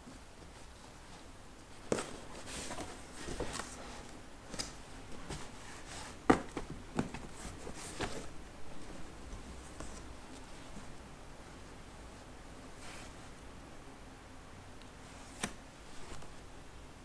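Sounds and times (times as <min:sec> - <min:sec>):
objects being handled and set down: 0:01.9 - 0:10.1.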